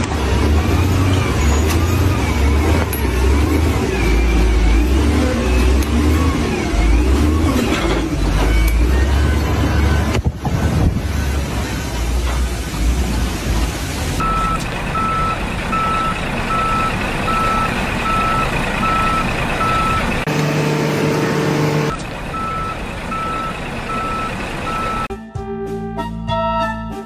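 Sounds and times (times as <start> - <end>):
reversing alarm beeping: 14.2 - 25.1
truck engine running: 14.2 - 25.1
low steady hum: 20.3 - 25.1.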